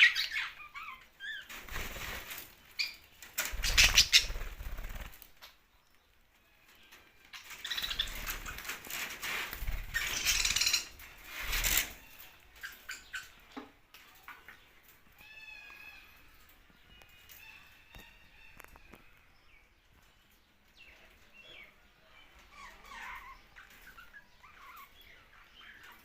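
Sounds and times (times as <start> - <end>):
bird chirp: 0.0 - 26.0
budgerigars flapping wings: 1.5 - 2.5, 3.4 - 5.3.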